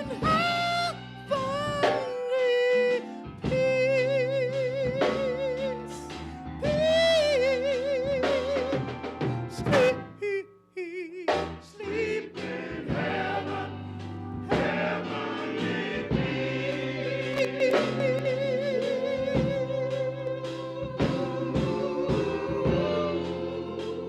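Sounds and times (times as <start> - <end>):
men's choir singing harmonies: 11.6 - 24.0.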